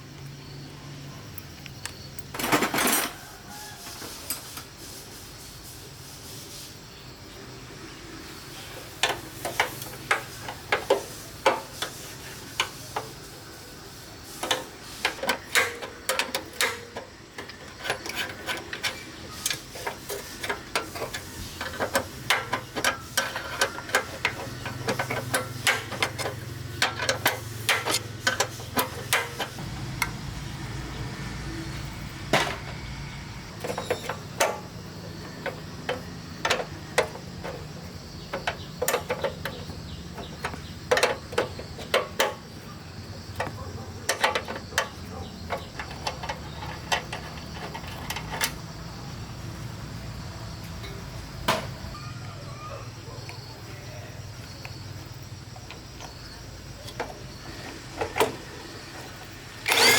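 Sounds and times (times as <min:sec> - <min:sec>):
hand tools knocking on metal: 0:14.4 - 0:30.2, 0:33.6 - 0:42.5, 0:43.3 - 0:48.6.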